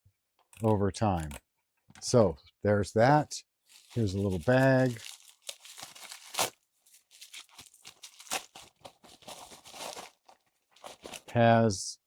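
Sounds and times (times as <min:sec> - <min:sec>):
plastic bag crinkling: 0:03.7 - 0:11.3.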